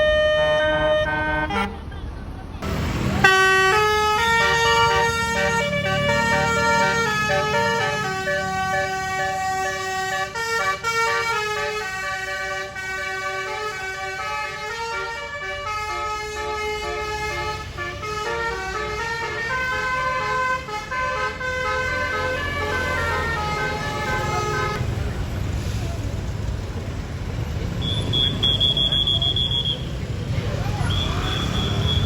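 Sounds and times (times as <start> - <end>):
bus engine running: 0.0 - 32.0
musical air horn playing a tune: 2.6 - 24.8.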